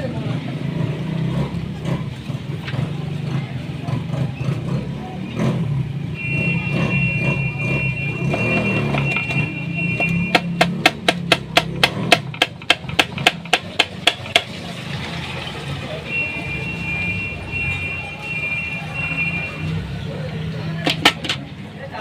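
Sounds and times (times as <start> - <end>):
sharp taps: 10.0 - 14.5, 20.8 - 21.5
high double tone: 16.1 - 19.9.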